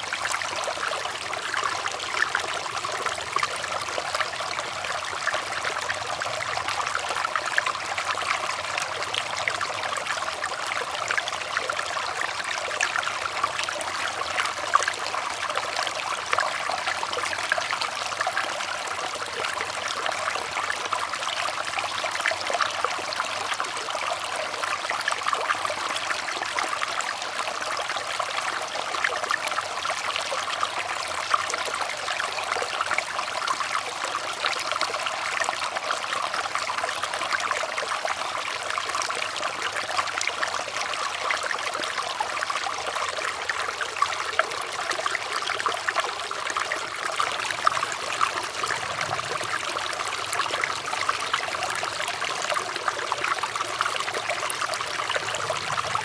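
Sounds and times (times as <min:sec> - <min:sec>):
running water trickling: 0:41.8 - 0:56.0.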